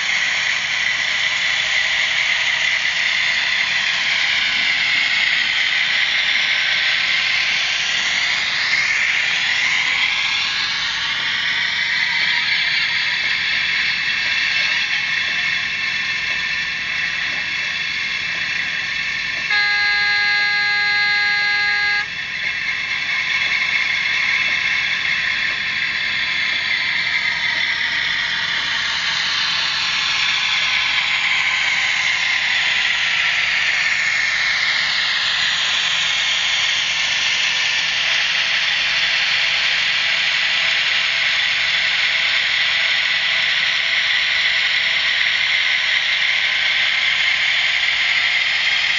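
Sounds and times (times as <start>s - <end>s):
diesel engine hiss: 0.0s - 48.9s
multi-tone horn blast: 19.5s - 22.1s
whine gliding down in pitch: 19.5s - 22.1s.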